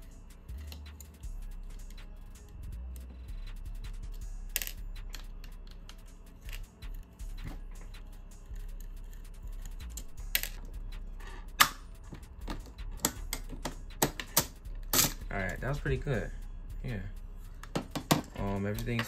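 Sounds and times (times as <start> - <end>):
clicks and taps of small parts: 11.6 - 15.2.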